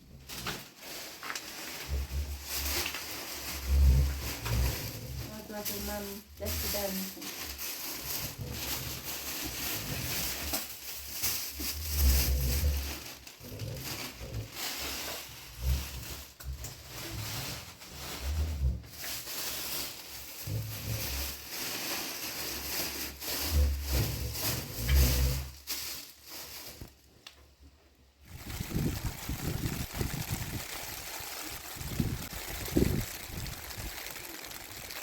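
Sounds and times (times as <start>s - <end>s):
wind gusts buffeting microphone: 28.3s - 34.9s
strong wind blowing: 28.3s - 35.0s.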